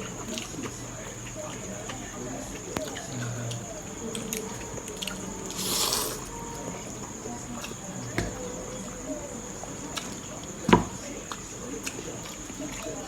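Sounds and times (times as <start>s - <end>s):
soft chewing and mouth clicks: 0.0s - 13.0s
person slurping noodles: 5.5s - 6.3s.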